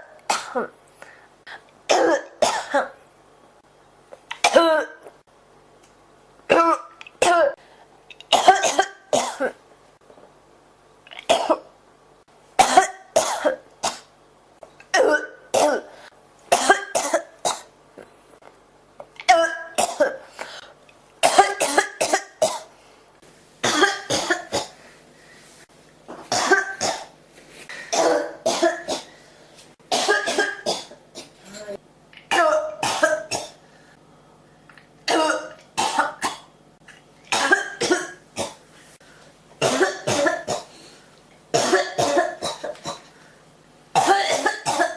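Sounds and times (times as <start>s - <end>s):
person coughing: 0.3s - 0.8s, 1.5s - 3.0s, 4.4s - 5.1s, 6.5s - 7.6s, 8.3s - 9.6s, 12.6s - 14.1s, 14.9s - 17.7s, 19.3s - 20.3s, 21.2s - 22.7s, 23.7s - 24.8s, 26.1s - 27.1s, 27.7s - 29.2s, 29.9s - 33.6s, 35.1s - 36.5s, 37.3s - 38.6s, 39.6s - 40.8s, 41.6s - 43.1s, 44.0s - 44.9s.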